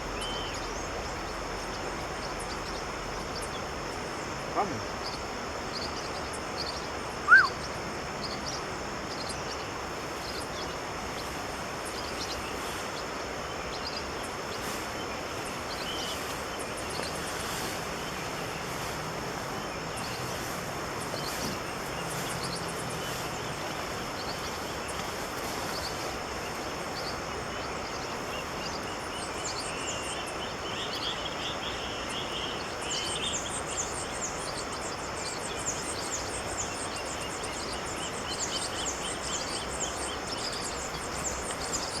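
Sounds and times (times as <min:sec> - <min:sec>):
birds chirping: 0:00.0 - 0:42.0
steady background hiss: 0:00.0 - 0:42.0.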